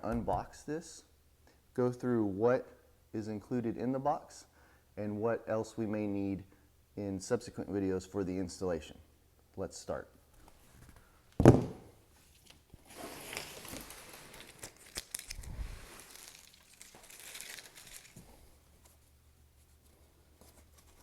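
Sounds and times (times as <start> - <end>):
packing tape tearing: 12.4 - 18.5.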